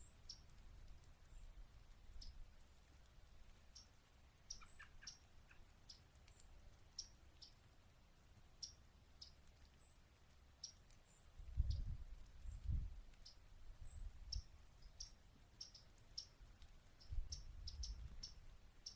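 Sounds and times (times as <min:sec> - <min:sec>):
warbler chip calls: 0:00.0 - 0:00.6, 0:03.7 - 0:07.6, 0:08.6 - 0:09.4, 0:12.5 - 0:18.9.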